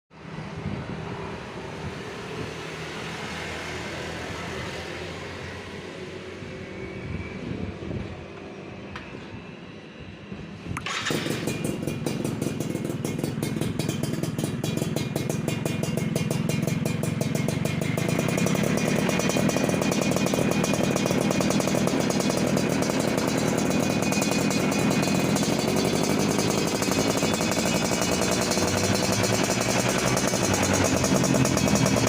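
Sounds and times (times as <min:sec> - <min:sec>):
two-stroke motorcycle engine: 0:10.8 - 0:32.0.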